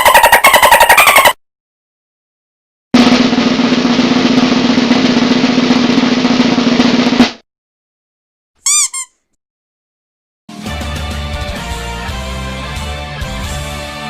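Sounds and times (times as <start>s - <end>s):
loud snare drum hit: 3.0s - 7.4s
snare drum roll: 3.0s - 7.4s.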